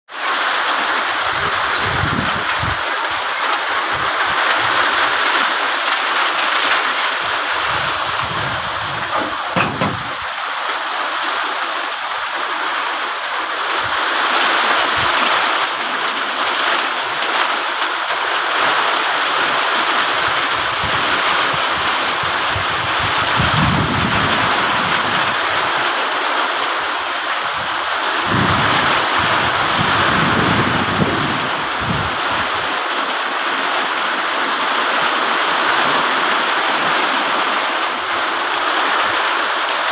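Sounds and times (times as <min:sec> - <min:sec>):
heavy rain pouring: 0:00.1 - 0:39.9
wind gusts on microphone: 0:01.2 - 0:05.3, 0:07.2 - 0:10.4, 0:20.0 - 0:25.8, 0:27.4 - 0:32.7
sharp knock: 0:09.0 - 0:10.2.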